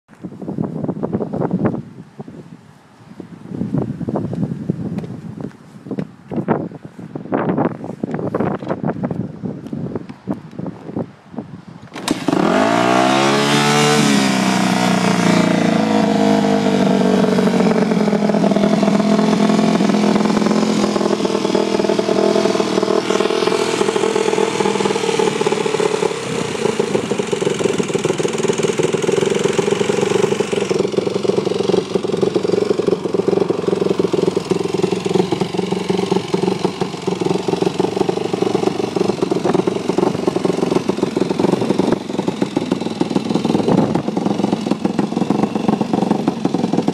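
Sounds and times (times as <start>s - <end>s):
dirt bike engine revving and idling: 11.9s - 46.9s.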